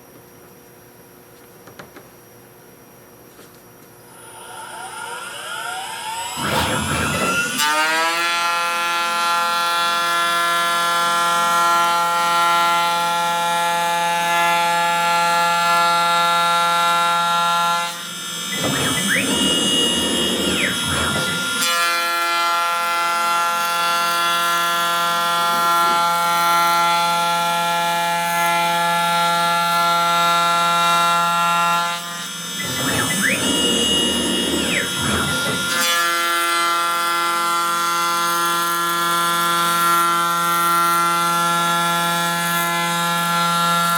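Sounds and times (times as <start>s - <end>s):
cnc router spindle whine: 4.0s - 43.9s.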